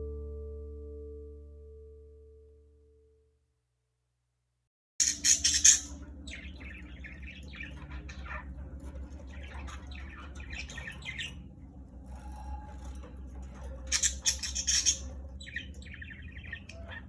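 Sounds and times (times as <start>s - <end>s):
sharp bird squawks: 5.0s - 6.0s
budgerigars chirping: 5.0s - 17.0s.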